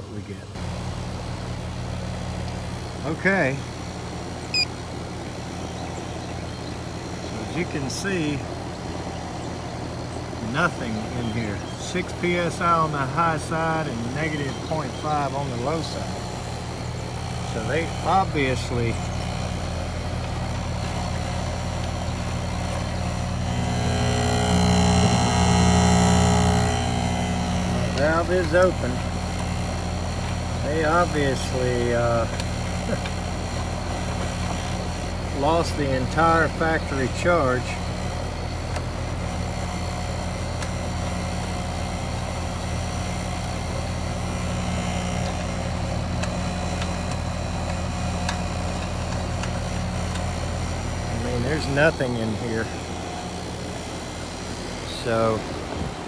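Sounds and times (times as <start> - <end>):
air conditioning unit humming: 0.0 - 56.0
high whining tones: 10.7 - 31.6.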